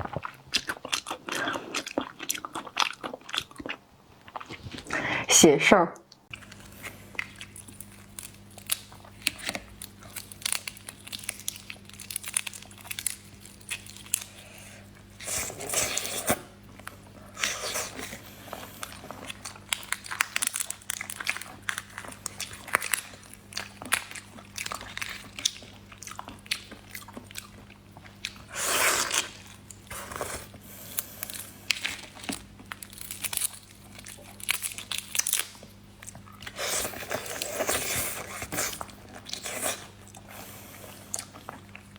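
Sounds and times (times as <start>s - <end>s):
chewing and biting shrimp: 0.0s - 4.9s, 6.3s - 41.9s.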